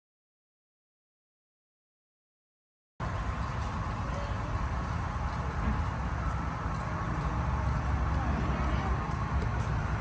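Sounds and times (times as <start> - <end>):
low rumbling background noise: 3.0 - 10.0.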